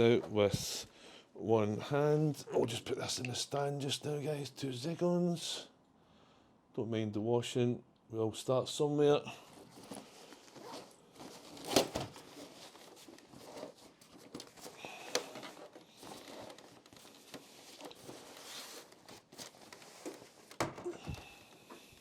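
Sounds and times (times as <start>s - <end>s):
faint handling rustling: 9.3s - 22.0s.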